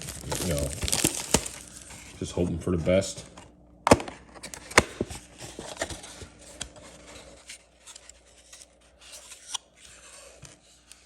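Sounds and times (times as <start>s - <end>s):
packaging scratching and scraping: 0.0s - 2.2s, 4.4s - 11.0s.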